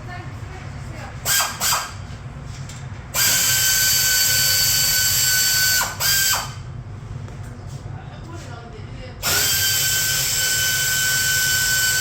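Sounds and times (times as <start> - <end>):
electric drill whining: 3.2 - 6.6, 9.2 - 12.0.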